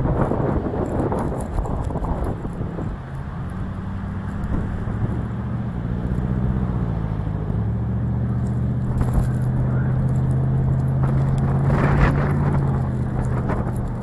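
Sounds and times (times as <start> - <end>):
car engine humming: 0.0 - 14.0
wind buffeting microphone: 0.0 - 14.0.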